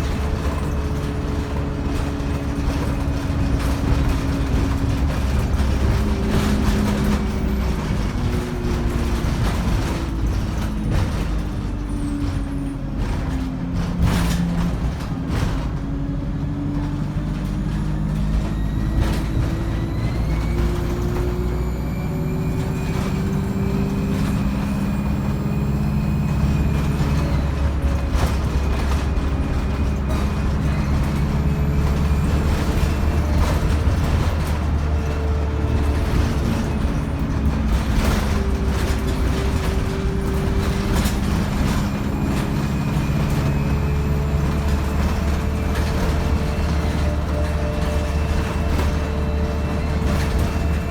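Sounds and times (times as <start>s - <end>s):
bus diesel engine droning: 0.0s - 50.9s
gearbox whine: 17.1s - 50.9s.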